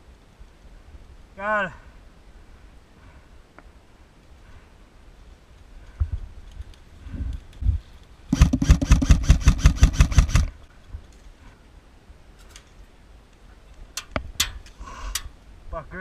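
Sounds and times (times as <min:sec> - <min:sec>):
airsoft gun full-auto burst: 0:08.3 - 0:10.5.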